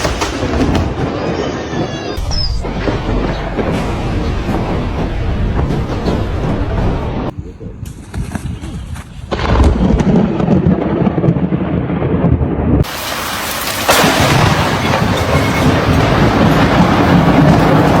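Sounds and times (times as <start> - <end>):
thunder rumbling: 0.0 - 18.0.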